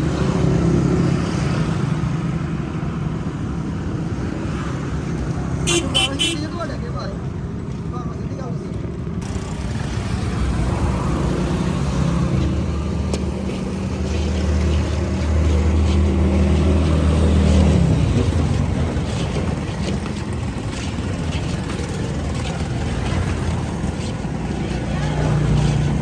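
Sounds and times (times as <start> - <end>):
street noise: 0.0 - 26.0
vehicle engine passing: 5.4 - 6.6, 9.2 - 26.0.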